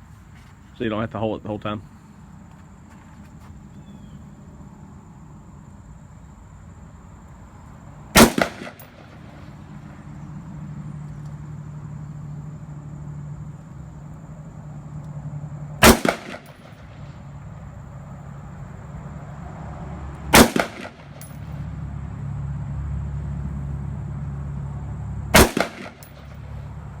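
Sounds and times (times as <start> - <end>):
rifle shots with echo: 8.2 - 9.6, 15.8 - 17.1, 20.3 - 21.4, 25.4 - 26.4.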